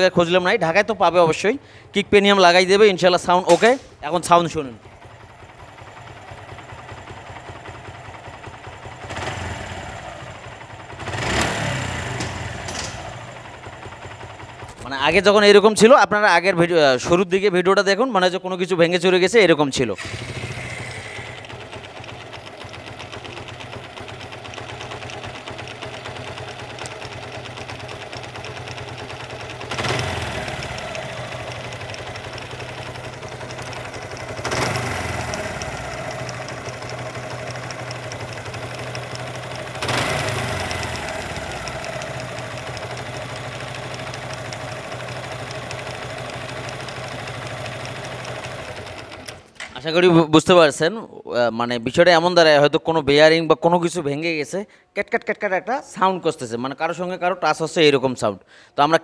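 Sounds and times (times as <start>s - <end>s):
motorcycle engine idling with knock: 4.9s - 14.9s, 20.4s - 49.3s.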